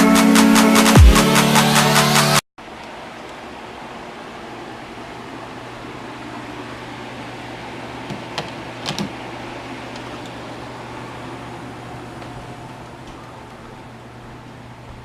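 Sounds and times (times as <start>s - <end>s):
fan hum: 2.6s - 15.0s.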